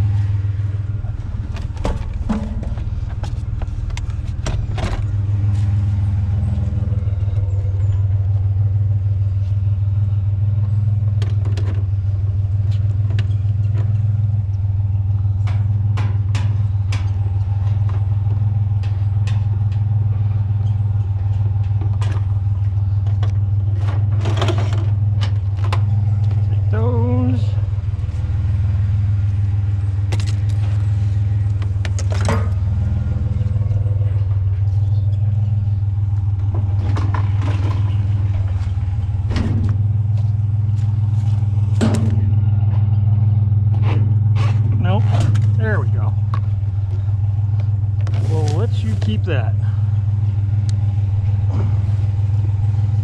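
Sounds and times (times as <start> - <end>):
vehicle engine humming: 0.0 - 53.0
objects knocking and clattering: 1.4 - 5.2, 36.3 - 40.3.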